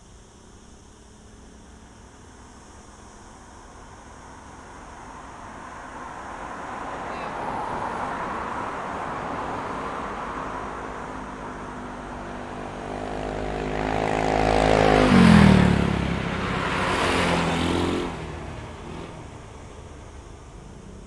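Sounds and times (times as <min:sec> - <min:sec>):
second vehicle tyre and engine rush: 0:00.2 - 0:21.0
vehicle passing close by: 0:04.2 - 0:21.0.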